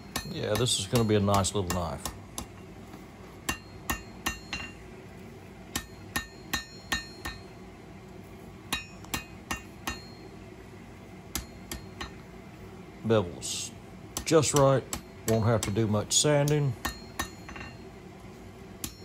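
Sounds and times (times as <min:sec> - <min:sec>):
hammer ringing on anvil: 0:00.0 - 0:02.7, 0:03.4 - 0:04.8, 0:05.7 - 0:07.6, 0:08.7 - 0:10.4, 0:11.3 - 0:12.2, 0:14.2 - 0:17.9, 0:18.8 - 0:19.0.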